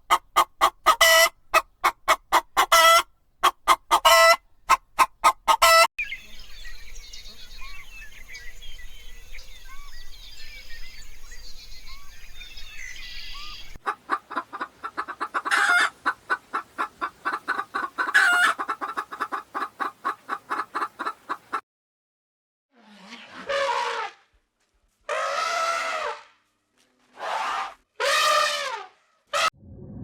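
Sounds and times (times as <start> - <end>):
hen clucking rapidly: 0.0 - 5.9, 13.4 - 21.6
hen squawking: 0.0 - 5.9, 13.8 - 21.6
chickens chirping and calling: 0.0 - 21.6.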